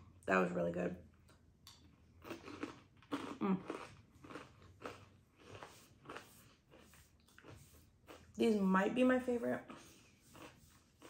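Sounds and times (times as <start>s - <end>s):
chewing crunchy snack: 1.6s - 8.4s, 9.6s - 11.0s.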